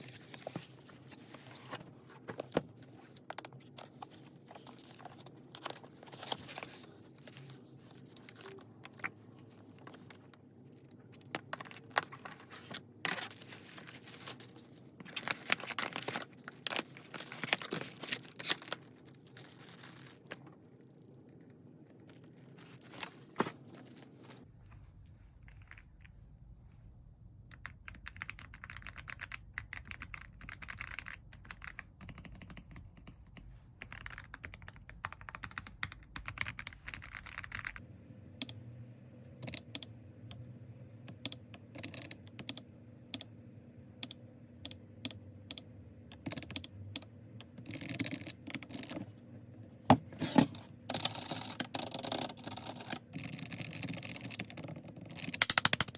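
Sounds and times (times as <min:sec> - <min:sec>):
mechanical keyboard typing: 0:27.5 - 0:37.8, 0:39.4 - 0:39.9, 0:41.1 - 0:42.6, 0:45.5 - 0:49.0, 0:50.4 - 0:55.9.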